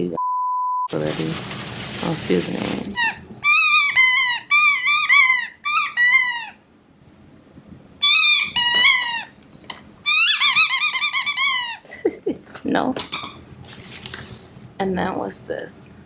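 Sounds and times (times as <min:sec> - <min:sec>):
squeaky dog toy squeaking: 0:03.0 - 0:06.6, 0:08.0 - 0:11.9, 0:13.0 - 0:13.4.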